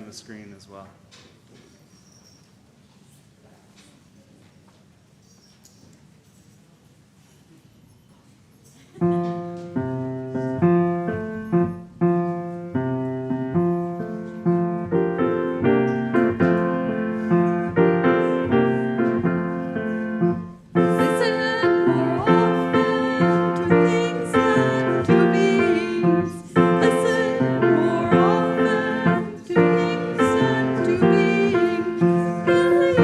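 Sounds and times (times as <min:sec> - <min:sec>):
piano playing hymn chords: 0:09.0 - 0:33.0.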